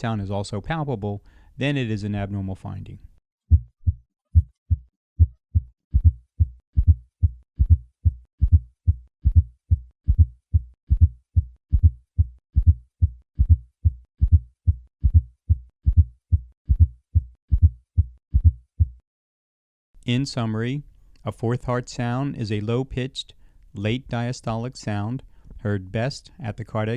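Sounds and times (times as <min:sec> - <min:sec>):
galloping heartbeat: 0:03.5 - 0:19.0.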